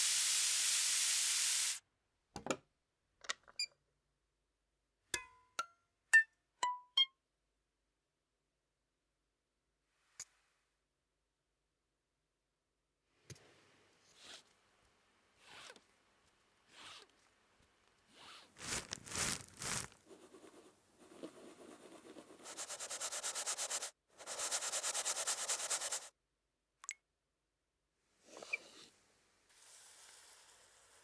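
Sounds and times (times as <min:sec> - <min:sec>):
rubbing strokes: 0:18.2 - 0:26.1.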